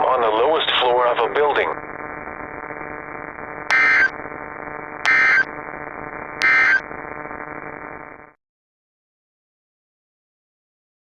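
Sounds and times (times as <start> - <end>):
radio static: 0.0 - 8.4
digital data bursts: 3.7 - 4.2, 5.1 - 5.5, 6.4 - 6.8.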